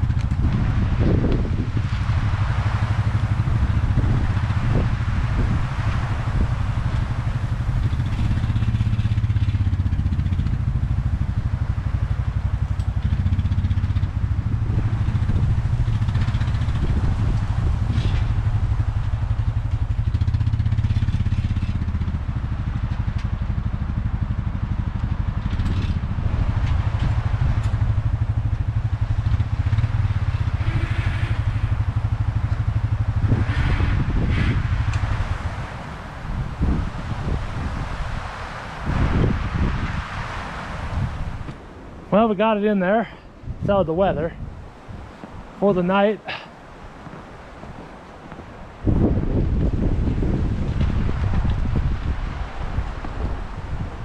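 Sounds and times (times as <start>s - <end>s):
atv engine running: 0.0s - 54.0s.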